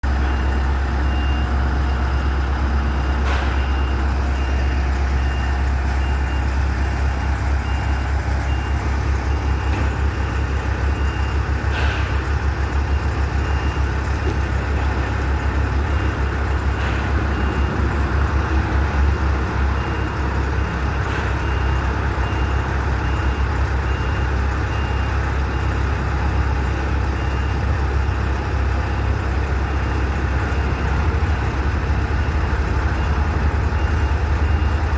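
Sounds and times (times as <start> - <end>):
diesel engine running: 0.0 - 34.9
backup alarm beeping: 0.1 - 18.6.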